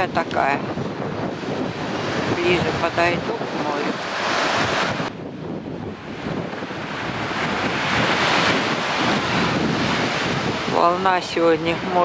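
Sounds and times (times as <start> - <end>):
waves breaking on beach: 0.0 - 12.0
wind on microphone: 0.0 - 12.0.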